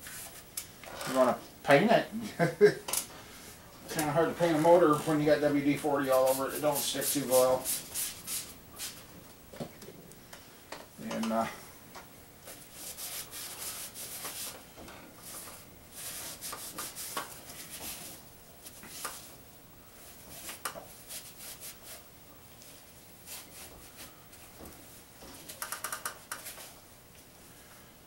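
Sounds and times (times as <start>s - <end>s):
cloth rag rubbing metal: 4.3s - 9.0s, 12.7s - 14.6s, 20.2s - 22.1s.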